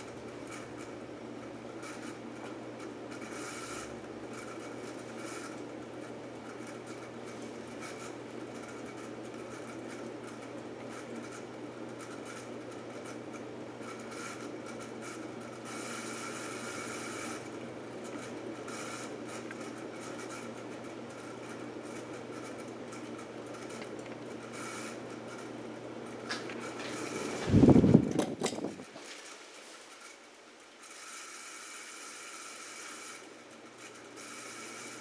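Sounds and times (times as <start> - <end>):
ceiling fan motor whirring: 0.0 - 35.0
loud clatter with clicks: 26.3 - 29.4.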